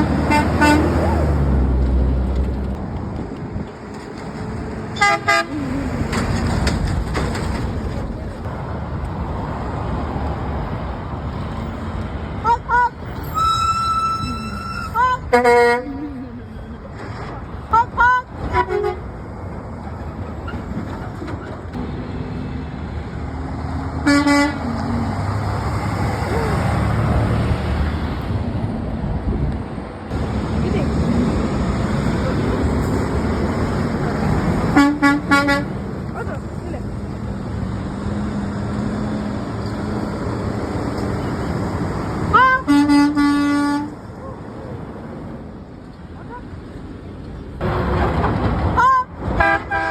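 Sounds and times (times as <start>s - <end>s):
truck horn blast: 0.0s - 1.2s, 5.0s - 5.8s, 12.4s - 16.0s, 17.7s - 19.1s, 24.0s - 25.0s, 34.7s - 35.8s, 42.2s - 44.0s, 48.8s - 49.9s
road traffic rumble: 0.0s - 49.9s.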